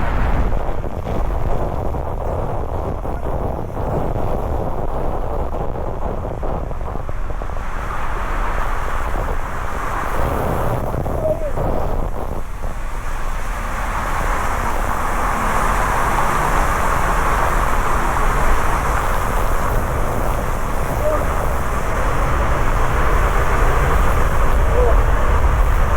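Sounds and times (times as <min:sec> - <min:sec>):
waterfall roaring: 0:08.0 - 0:25.9.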